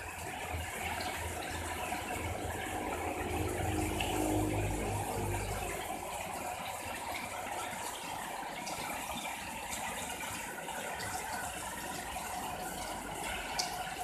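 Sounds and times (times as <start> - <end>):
heavy rain pouring: 0.0 - 14.0
sharp ticks of raindrops: 11.0 - 14.0.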